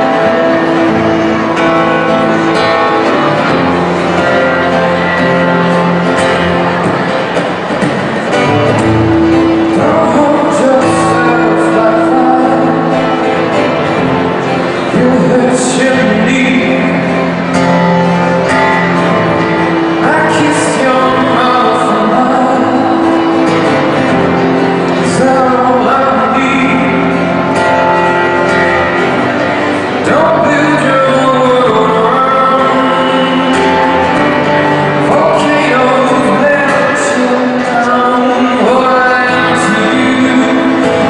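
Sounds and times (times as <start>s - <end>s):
man singing slow song: 9.5s - 41.0s.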